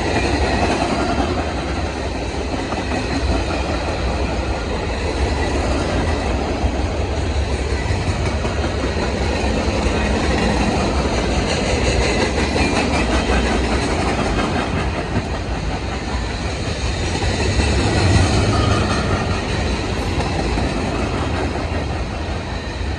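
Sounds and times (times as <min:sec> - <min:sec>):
wheels clacking over rail joints: 0:00.0 - 0:22.5
freight train rumbling past: 0:00.0 - 0:22.9.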